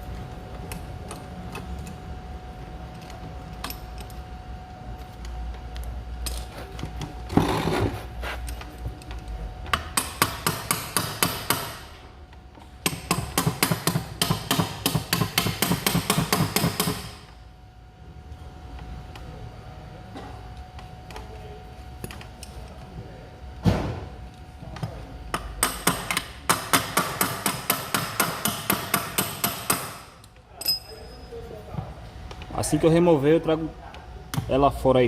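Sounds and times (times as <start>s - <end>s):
hammer striking metal: 9.7s - 12.0s, 25.4s - 31.1s.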